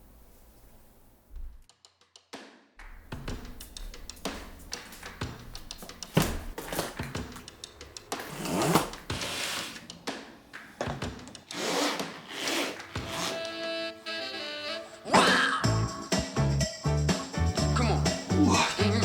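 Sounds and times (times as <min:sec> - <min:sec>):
keyboard parts clicking and knocking: 0:02.9 - 0:09.8
scraping and rubbing: 0:03.5 - 0:10.0, 0:11.5 - 0:13.6.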